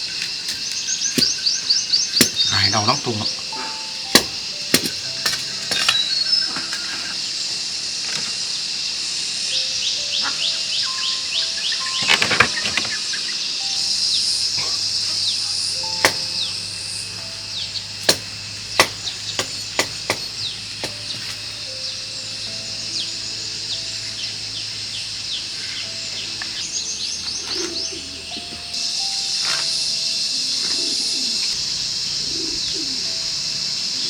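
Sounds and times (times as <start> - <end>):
birds chirping: 0.0 - 34.0
insects chorus: 0.0 - 34.0
soft background music: 0.0 - 34.0
sharp knocks: 3.8 - 6.0, 16.0 - 16.4, 18.0 - 21.4.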